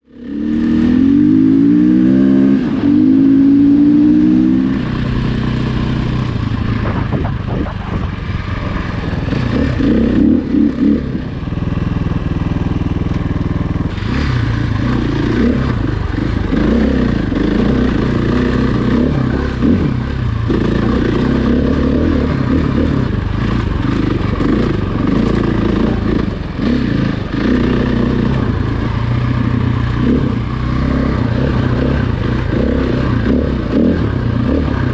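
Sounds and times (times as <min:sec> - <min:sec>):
off-road vehicle engine: 0:00.0 - 0:34.9
vehicle clatter: 0:05.9 - 0:10.5.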